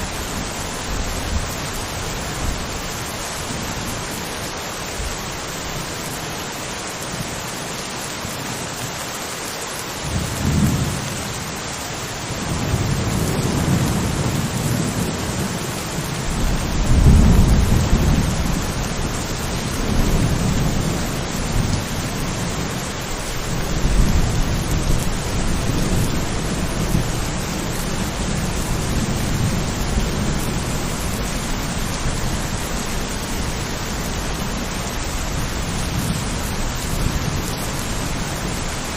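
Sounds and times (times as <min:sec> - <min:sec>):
rain hissing: 0:00.0 - 0:38.9
thunder rumbling: 0:12.3 - 0:38.9.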